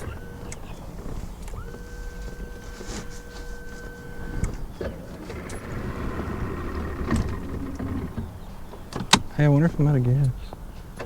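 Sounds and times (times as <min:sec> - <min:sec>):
electric motor whirring: 0:00.0 - 0:08.4
outboard motor cutting out: 0:00.0 - 0:10.4.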